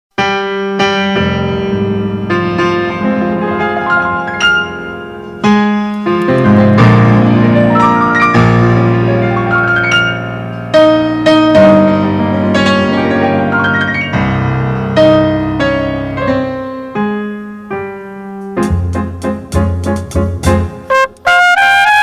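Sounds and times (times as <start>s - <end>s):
slow piano melody: 0.2s - 21.6s.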